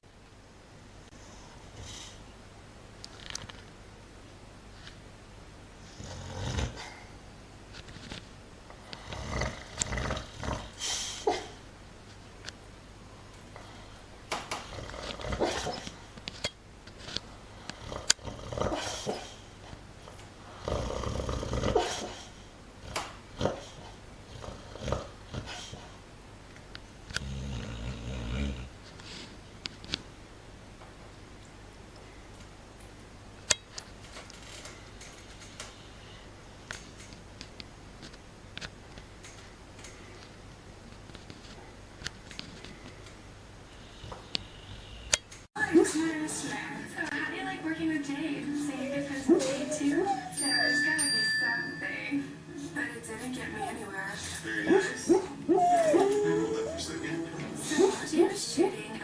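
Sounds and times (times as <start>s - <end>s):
dog noisy breaths: 1.1s - 2.2s, 8.9s - 11.6s, 17.4s - 19.8s, 20.4s - 26.0s
dog low vocal sounds: 14.6s - 16.0s, 54.8s - 57.1s.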